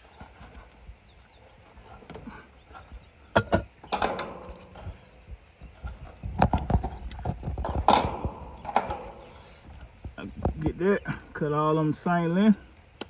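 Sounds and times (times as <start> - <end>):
tools clicking and knocking: 3.4 - 4.9.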